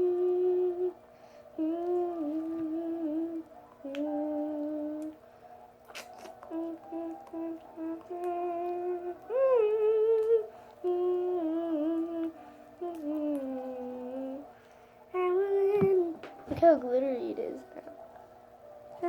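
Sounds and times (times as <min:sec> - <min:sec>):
girl humming a tune: 0:00.0 - 0:05.2, 0:06.4 - 0:16.3.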